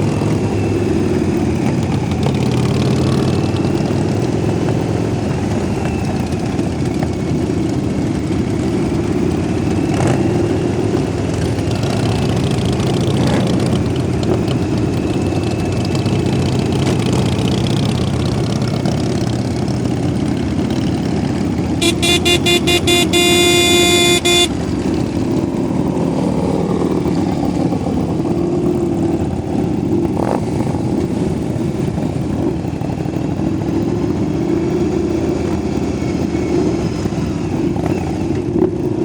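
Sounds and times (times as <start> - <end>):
motorcycle engines rumbling: 0.0 - 24.6.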